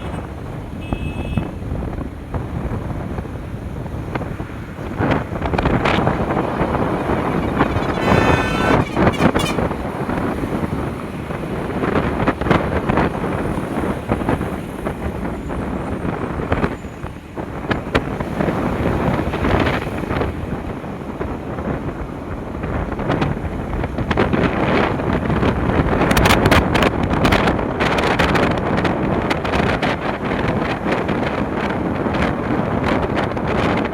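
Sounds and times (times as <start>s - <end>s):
motorcycle and road rumble: 0.0s - 33.9s
wind buffeting microphone: 0.0s - 33.9s
short tone: 7.2s - 9.7s.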